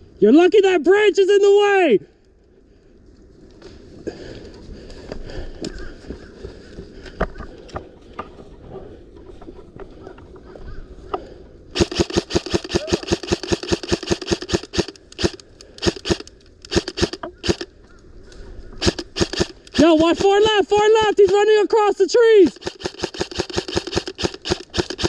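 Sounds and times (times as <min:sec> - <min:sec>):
airsoft rifle firing: 0:11.8 - 0:17.7, 0:18.8 - 0:21.4, 0:22.5 - 0:25.0.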